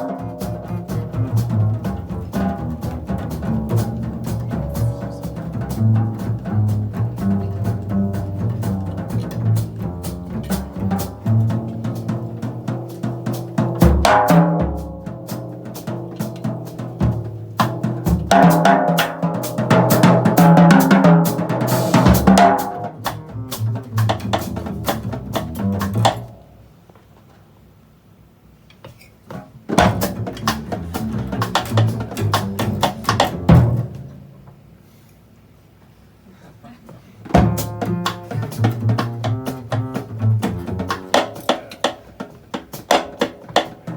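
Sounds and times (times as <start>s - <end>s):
low pitched notes: 0.0s - 11.6s, 30.0s - 34.1s, 37.4s - 41.2s
jazz drum kit playing: 0.0s - 26.8s, 29.3s - 34.6s, 37.2s - 43.9s.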